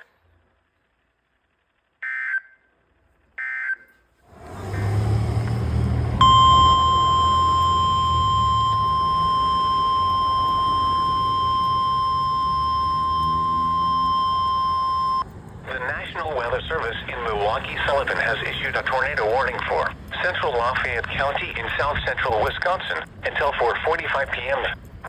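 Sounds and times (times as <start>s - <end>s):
steady high warning tone: 3.8s - 25.0s
short electronic beeps: 6.2s - 15.2s
radio hiss: 15.6s - 24.8s.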